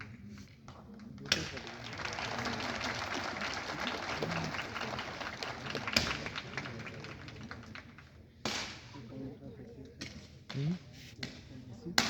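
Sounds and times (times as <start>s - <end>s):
crowd applauding: 1.6s - 7.9s.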